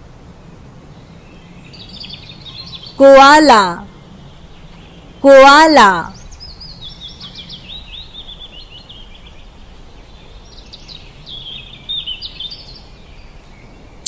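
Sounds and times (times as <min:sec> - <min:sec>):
faint outdoor background noise: 0:00.0 - 0:14.0
small bird chirping: 0:01.3 - 0:03.0, 0:06.1 - 0:13.9.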